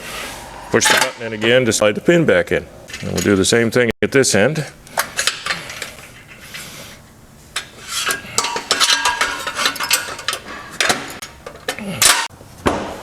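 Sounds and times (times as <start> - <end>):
metal clicks and clinks: 7.6 - 12.3.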